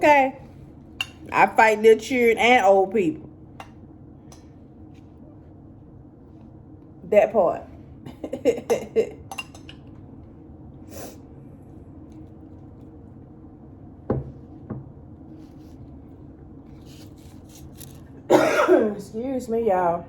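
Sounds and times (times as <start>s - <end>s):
dishes and utensils clinking: 1.0s - 1.3s, 8.6s - 9.9s.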